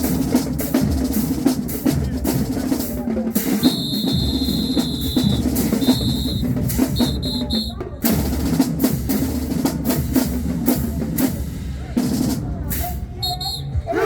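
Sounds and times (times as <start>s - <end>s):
marching drumline cadence: 0.0s - 14.0s
whistle blasts: 3.6s - 7.8s, 13.2s - 13.9s.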